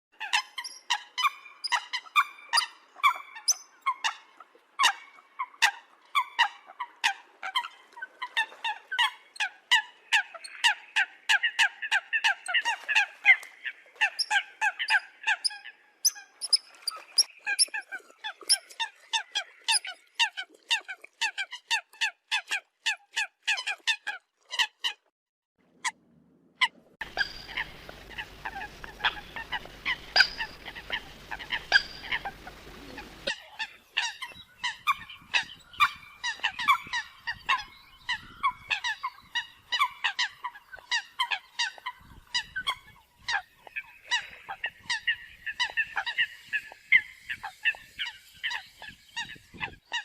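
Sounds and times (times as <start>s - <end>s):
coots honking calls: 27.0s - 39.0s.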